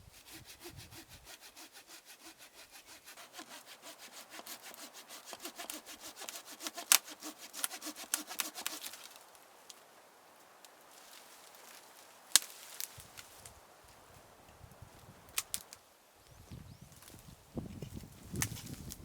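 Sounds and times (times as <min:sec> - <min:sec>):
hand saw cutting wood: 0:00.0 - 0:09.2.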